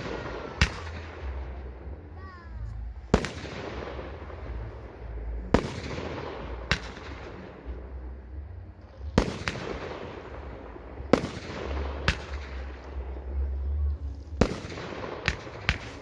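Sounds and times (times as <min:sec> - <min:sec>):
firework bangs with rolling echo: 0:00.0 - 0:01.7, 0:03.1 - 0:08.0, 0:09.1 - 0:13.2, 0:14.3 - 0:16.0.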